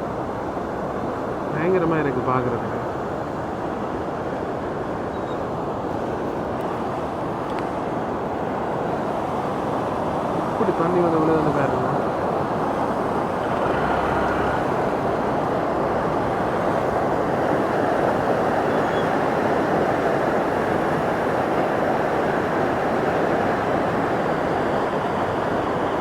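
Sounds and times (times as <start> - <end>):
floodwater rushing over a drop: 6.0 - 26.0.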